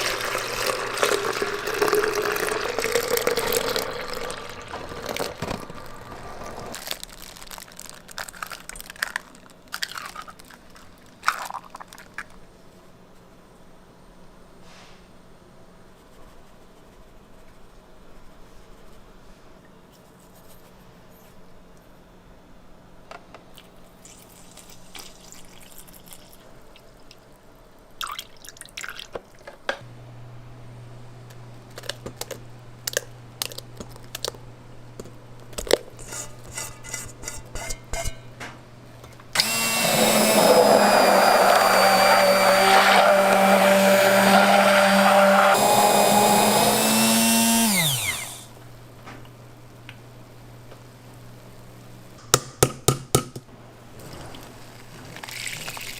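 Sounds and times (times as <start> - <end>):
kitchen clatter: 35.6 - 38.6
kitchen machine motor running: 39.4 - 48.5.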